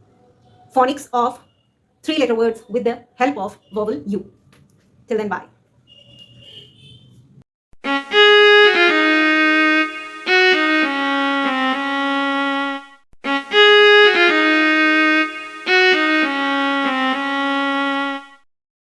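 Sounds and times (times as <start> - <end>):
instrumental melody of held notes: 7.8 - 18.4.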